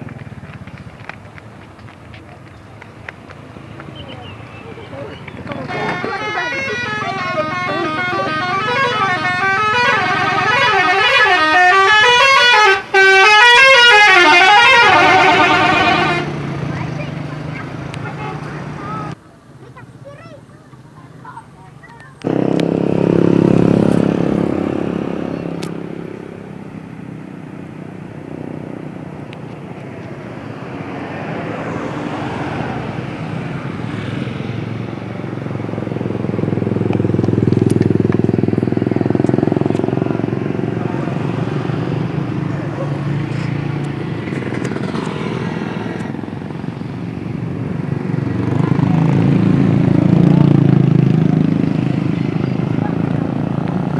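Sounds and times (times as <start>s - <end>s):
bus diesel engine rumbling: 0.0s - 53.9s
multi-tone bus horn tune: 5.5s - 16.5s
vehicle whooshing by: 22.3s - 53.9s.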